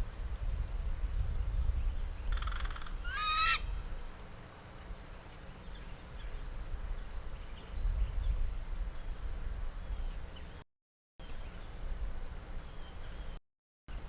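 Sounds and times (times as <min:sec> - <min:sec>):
crow cawing: 0:02.3 - 0:03.7
crow higher bending call: 0:02.4 - 0:03.7.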